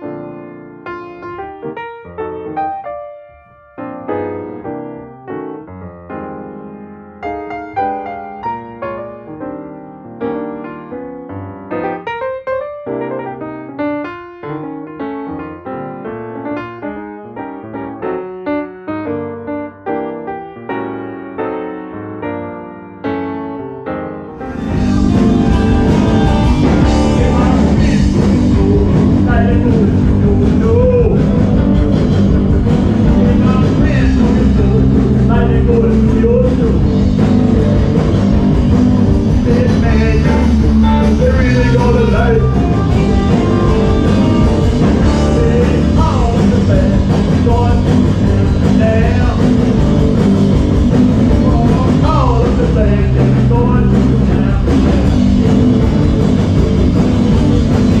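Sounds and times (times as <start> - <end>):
rock music with singing and guitar: 24.4 - 58.0.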